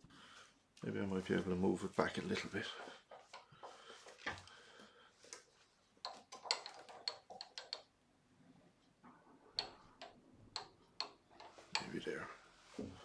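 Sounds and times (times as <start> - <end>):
wood blank clicking and knocking: 5.3 - 8.0, 9.6 - 12.0.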